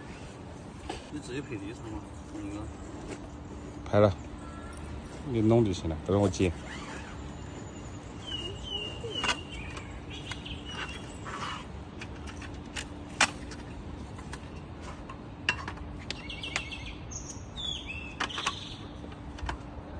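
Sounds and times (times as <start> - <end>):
birds chirping: 0.9 - 12.2, 16.0 - 19.4.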